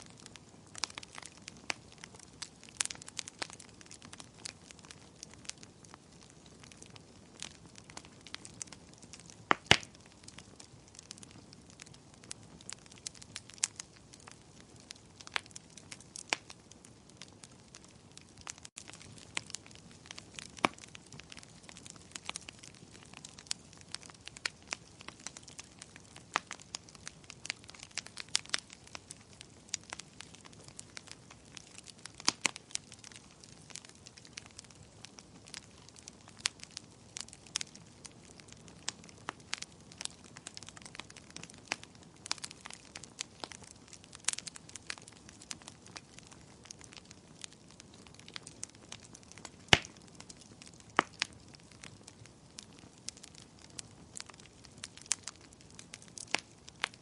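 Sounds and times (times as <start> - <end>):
wood fire crackling: 0.0 - 57.0
sharp pops and snaps: 8.2 - 10.0, 39.6 - 51.4.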